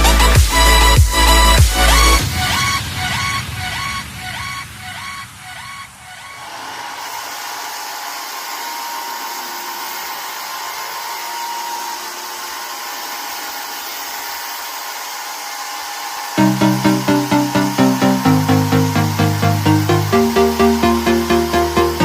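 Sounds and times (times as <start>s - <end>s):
music: 0.0s - 5.6s, 16.4s - 22.0s
vacuum fan motor whirring: 6.4s - 22.0s.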